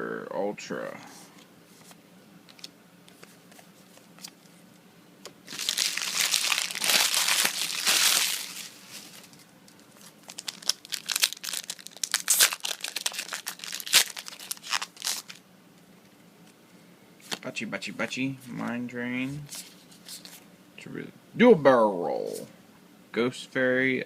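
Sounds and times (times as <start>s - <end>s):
foil wrapper crinkling: 5.5s - 15.4s.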